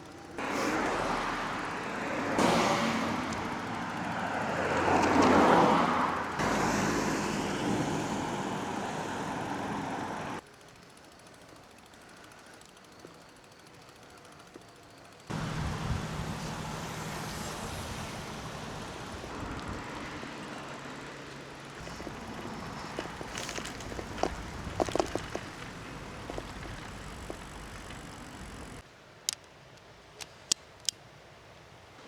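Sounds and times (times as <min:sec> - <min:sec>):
bicycle tyre and wind noise: 0:00.1 - 0:28.8
bike rattling clicks: 0:01.6 - 0:06.4, 0:21.8 - 0:29.5.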